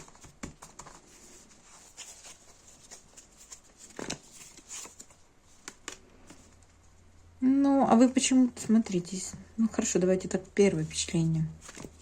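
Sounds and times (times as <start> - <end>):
cards rustling: 0.0 - 6.8, 11.5 - 12.0.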